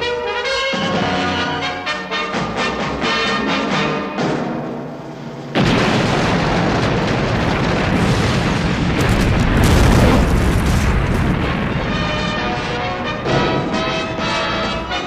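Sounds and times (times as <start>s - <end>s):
explosion with deep rumbling roar: 5.5s - 14.7s.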